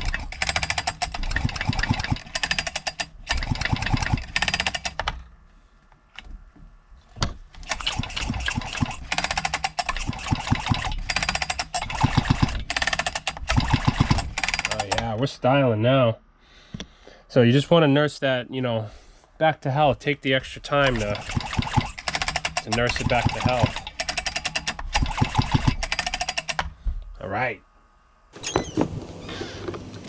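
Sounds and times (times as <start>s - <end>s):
recoil starter pulls: 0.0s - 5.0s, 20.9s - 26.6s, 28.4s - 30.0s.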